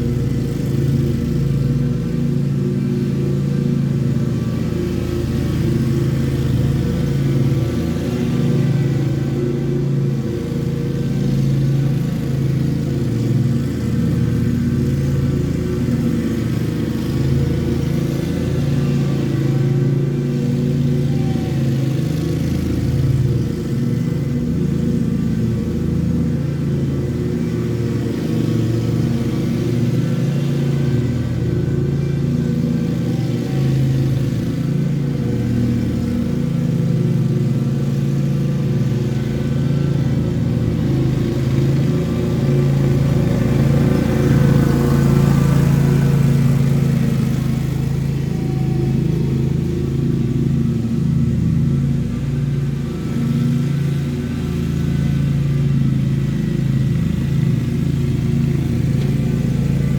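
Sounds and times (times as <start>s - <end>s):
lawn mower engine cutting grass: 0.0s - 59.9s.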